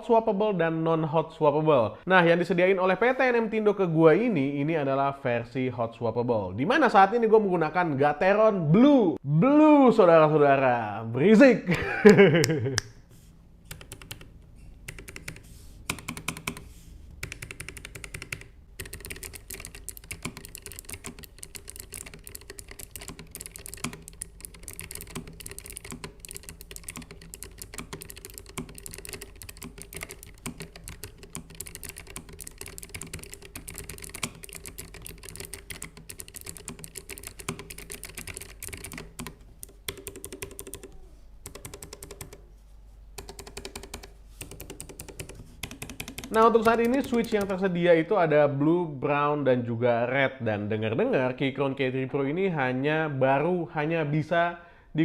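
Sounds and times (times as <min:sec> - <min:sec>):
mechanical keyboard typing: 0:13.7 - 0:42.4, 0:43.2 - 0:47.6.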